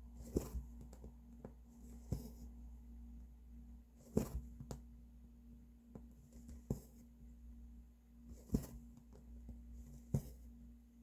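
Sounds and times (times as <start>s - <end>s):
needle and thread through fabric: 0.0s - 2.7s, 3.9s - 4.8s, 8.2s - 10.5s
faint steady hum: 0.0s - 11.0s.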